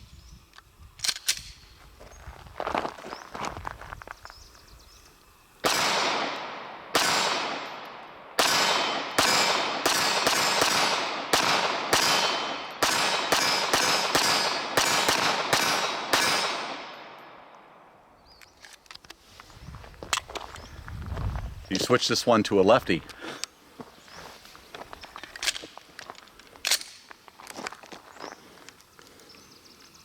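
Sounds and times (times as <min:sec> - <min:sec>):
pistol shots echoing: 0:05.6 - 0:18.0.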